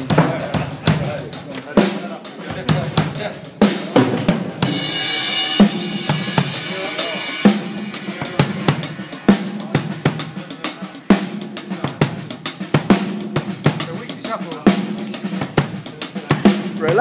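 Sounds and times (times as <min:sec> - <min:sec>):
cymbal crash ringing: 0:04.6 - 0:14.1
hi-hat: 0:04.7 - 0:17.0.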